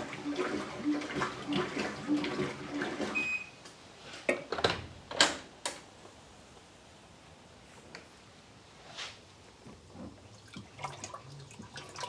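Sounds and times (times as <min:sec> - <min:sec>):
washing machine water sloshing: 0:00.0 - 0:03.3, 0:10.0 - 0:12.0.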